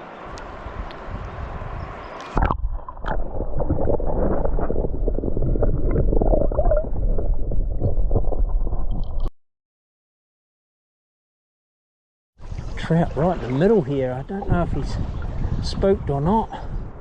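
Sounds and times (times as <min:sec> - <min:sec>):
wind buffeting microphone: 0:00.3 - 0:09.2, 0:12.4 - 0:17.0.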